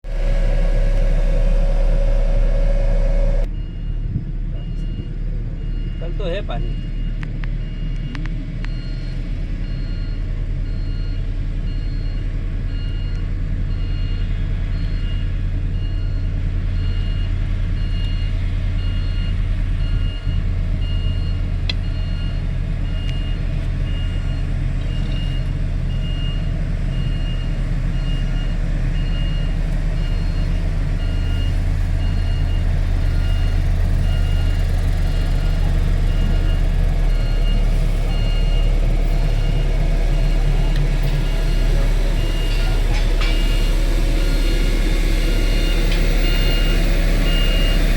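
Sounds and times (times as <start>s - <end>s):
heavy vehicle engine droning: 0.0s - 47.9s
reversing alarm beeping: 0.1s - 47.9s.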